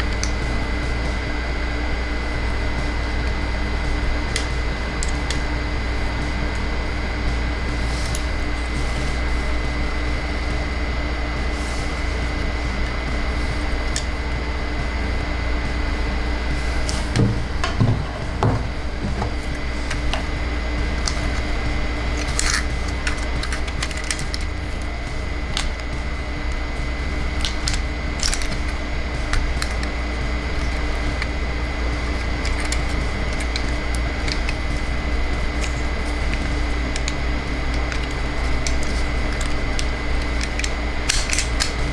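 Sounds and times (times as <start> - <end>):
electrical hum: 0.0 - 41.9
plastic toy parts snapping: 4.3 - 5.5, 22.1 - 24.9, 25.5 - 26.0, 27.3 - 31.4, 32.0 - 41.9.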